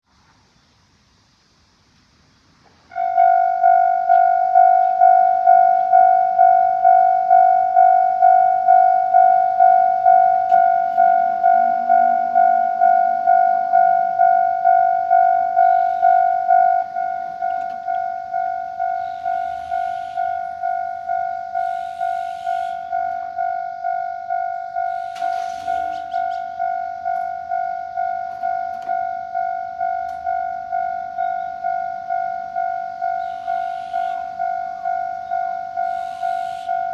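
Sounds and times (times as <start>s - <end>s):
level crossing warning bell: 2.9s - 36.9s.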